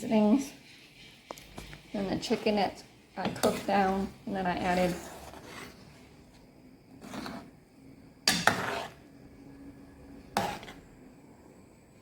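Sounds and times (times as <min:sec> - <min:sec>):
cookware scraping: 0:00.0 - 0:06.2, 0:06.9 - 0:07.6, 0:08.2 - 0:09.1, 0:10.3 - 0:11.0.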